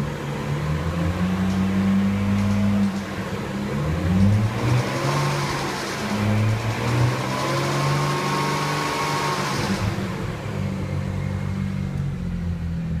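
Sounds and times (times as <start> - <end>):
car engine running: 0.0 - 13.0
ticking engine rattle: 2.3 - 4.6.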